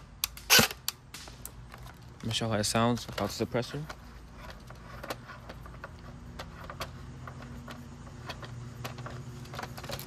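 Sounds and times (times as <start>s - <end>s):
steady low hum: 0.0s - 10.0s
light clicks and scrapes: 1.7s - 10.0s.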